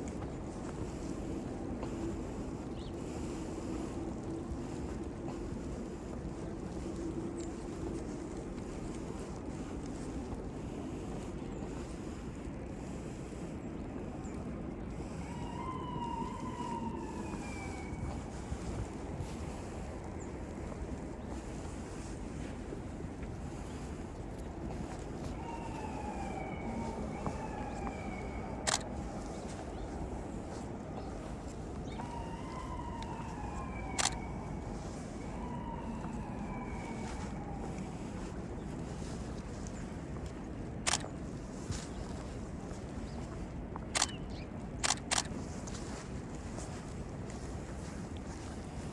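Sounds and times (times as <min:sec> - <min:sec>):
wind buffeting microphone: 0:00.0 - 0:48.9
siren wailing: 0:15.0 - 0:19.8, 0:24.7 - 0:39.1.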